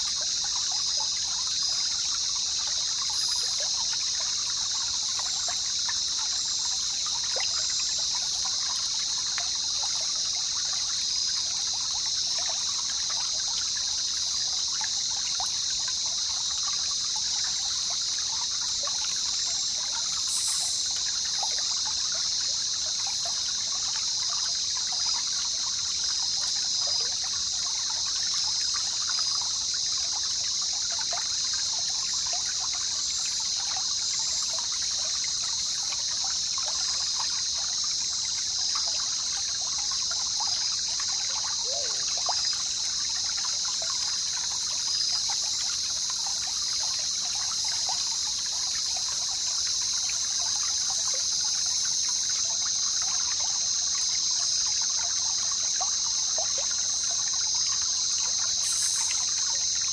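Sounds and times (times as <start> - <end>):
river water babbling: 0.0 - 59.9
high-pitched hiss: 40.7 - 59.9.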